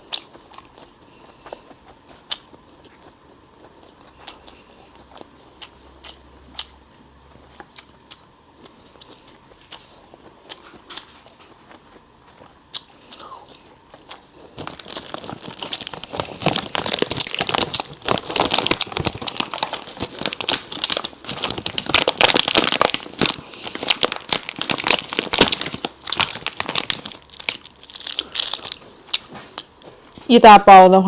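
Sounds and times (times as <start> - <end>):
plastic wrapping crinkling and tearing: 14.0 - 30.3.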